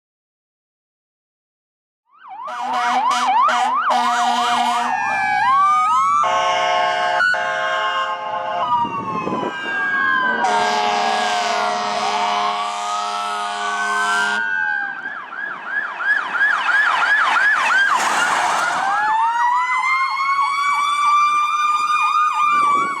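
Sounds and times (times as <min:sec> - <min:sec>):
siren yelp: 0:02.1 - 0:23.0
wailing siren: 0:02.1 - 0:23.0
fire truck air horn: 0:02.4 - 0:05.4, 0:06.2 - 0:08.9, 0:10.2 - 0:14.6.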